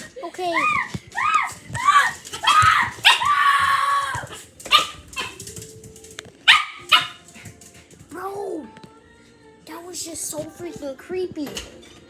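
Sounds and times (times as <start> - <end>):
dog barking and whining: 0.5 - 5.4, 6.5 - 7.3.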